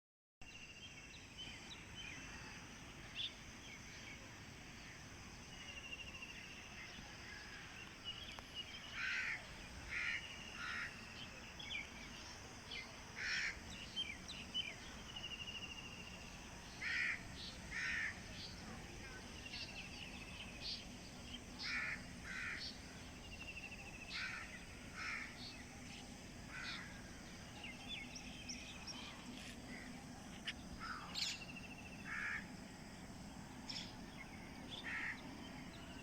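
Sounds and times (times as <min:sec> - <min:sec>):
outdoor hiss: 0:00.5 - 0:36.0
small birds chirping: 0:00.5 - 0:36.0
crows cawing: 0:09.0 - 0:11.0, 0:13.2 - 0:13.6, 0:16.8 - 0:18.2, 0:21.6 - 0:22.7, 0:24.1 - 0:25.4, 0:26.5 - 0:27.0, 0:30.8 - 0:31.2, 0:32.1 - 0:32.5, 0:34.8 - 0:35.2.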